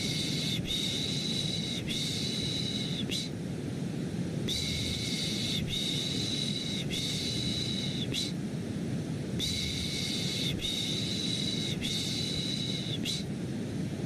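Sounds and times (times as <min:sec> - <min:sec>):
low-pitched white noise: 0:00.0 - 0:14.0
person shushing: 0:04.5 - 0:08.4, 0:09.4 - 0:13.3.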